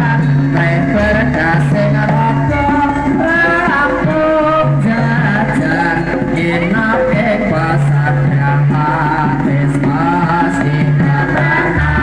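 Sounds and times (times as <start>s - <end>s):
melody over stepping bass line: 0.0s - 6.8s.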